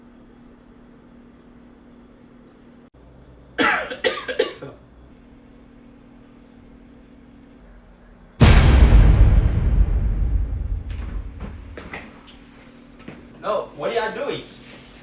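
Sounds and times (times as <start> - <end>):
man coughing: 3.6 - 4.8
sudden loud sound: 8.4 - 12.2.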